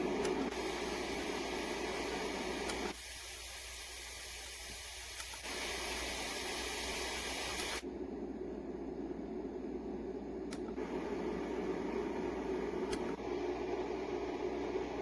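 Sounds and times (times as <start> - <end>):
white noise machine: 0.0 - 15.0
faint clicks: 2.6 - 3.0, 4.7 - 5.6, 10.4 - 10.9, 12.8 - 13.2.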